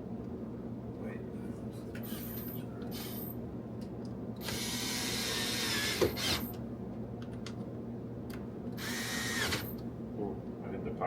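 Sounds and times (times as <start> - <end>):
steady low hum: 0.0 - 11.0
cordless drill driving screw: 4.4 - 6.6, 8.8 - 9.7.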